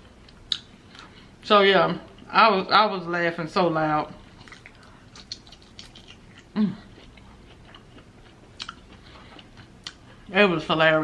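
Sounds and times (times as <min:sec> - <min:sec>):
wet mouth clicks: 0:04.4 - 0:07.2
close chewing: 0:04.4 - 0:10.2
person humming: 0:06.6 - 0:06.9.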